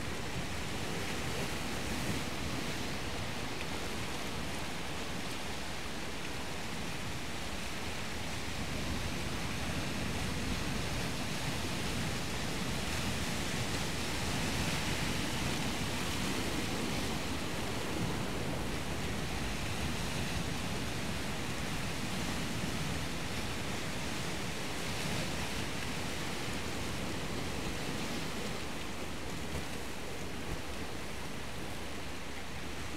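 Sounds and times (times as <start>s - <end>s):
surf rushing along shore: 0.0s - 32.9s.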